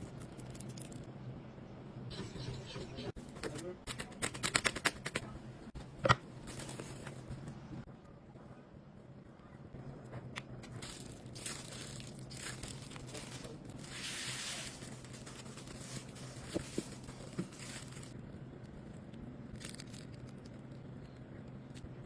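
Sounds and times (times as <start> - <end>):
crinkling and rustling handling noise: 5.8 - 7.6, 10.1 - 21.9.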